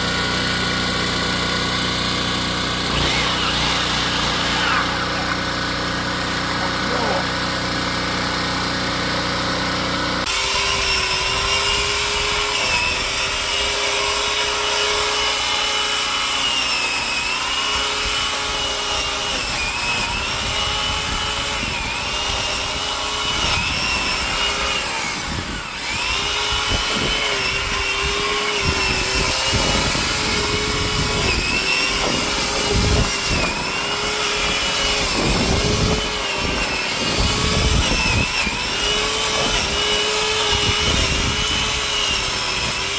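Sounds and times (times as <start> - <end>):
generator engine running: 0.0 - 10.3
electric saw motor whining: 0.0 - 42.9.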